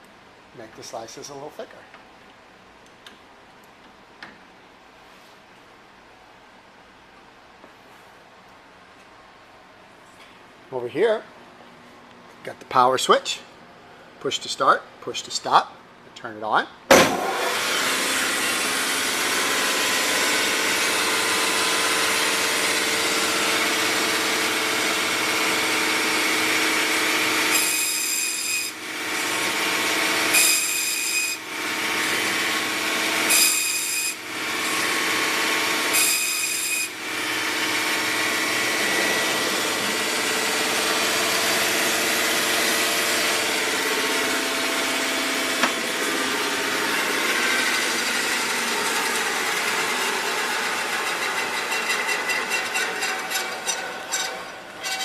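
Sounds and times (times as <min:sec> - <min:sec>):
meat band saw running: 0:16.9 - 0:55.0.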